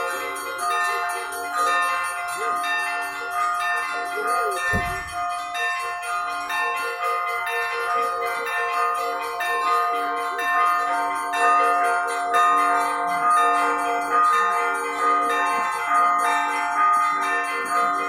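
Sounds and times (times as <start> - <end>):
church bells ringing a peal: 0.0 - 18.0.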